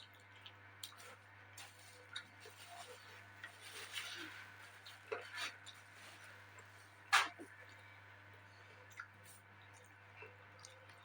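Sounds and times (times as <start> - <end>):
soft chewing and clicks: 0.0 - 2.6, 8.5 - 11.0
low steady hum: 0.0 - 11.0.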